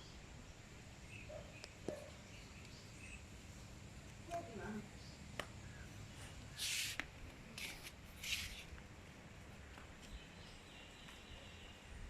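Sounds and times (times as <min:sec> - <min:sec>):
faint low background noise: 0:00.0 - 0:12.0
hissing scrapes: 0:06.5 - 0:07.0, 0:07.6 - 0:08.7.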